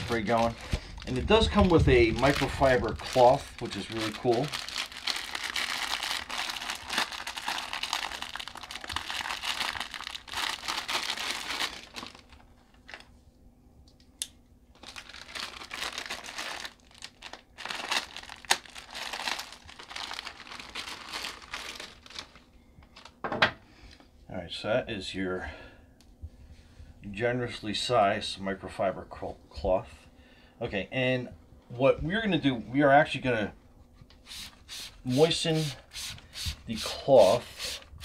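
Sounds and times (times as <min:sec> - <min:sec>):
plastic wrapper crinkling: 0:00.0 - 0:13.1, 0:14.7 - 0:23.2.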